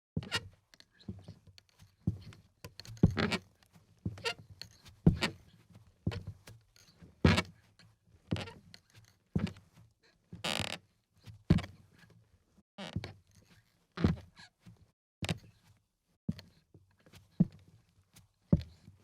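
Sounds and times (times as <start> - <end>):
flip-flop footsteps on wooden boards: 1.1 - 6.6, 7.2 - 7.6, 8.3 - 8.6, 9.4 - 9.6, 11.5 - 11.8, 14.0 - 14.3, 17.4 - 17.6, 18.5 - 19.0.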